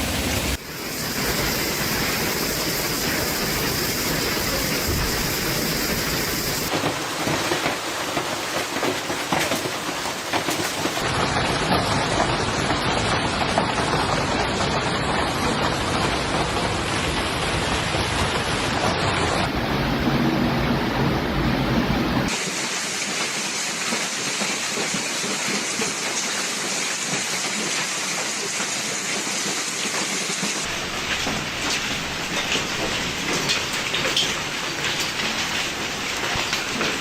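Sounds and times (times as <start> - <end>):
hail and heavy rain pelting: 0.0 - 20.6, 22.3 - 37.0.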